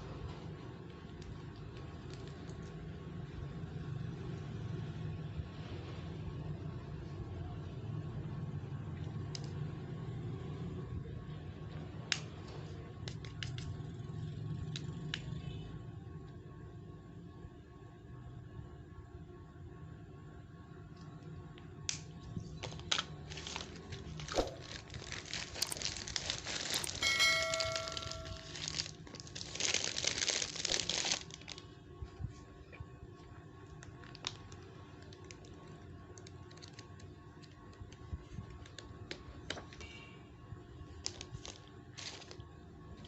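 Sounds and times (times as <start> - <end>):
wrapping crinkling and tearing: 1.2 - 2.8, 22.6 - 31.8, 33.7 - 39.2, 40.9 - 42.5
brief high tone: 27.0 - 28.6.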